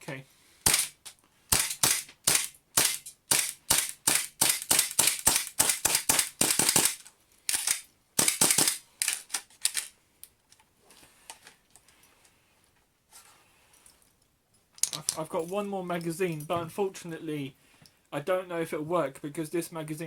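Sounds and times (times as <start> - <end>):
airsoft pistol firing: 0.6 - 7.0, 8.2 - 8.8.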